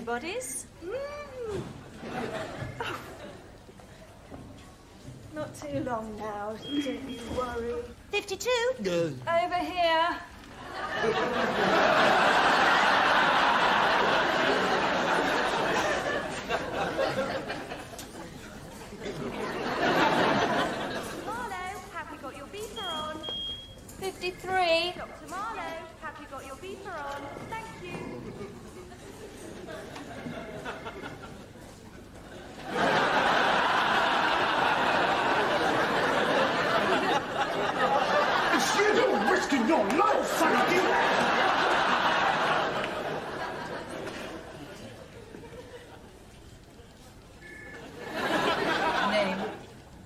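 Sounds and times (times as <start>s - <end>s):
studio audience laughing: 1.8s - 3.5s, 10.6s - 21.4s, 28.2s - 46.2s, 47.7s - 49.7s.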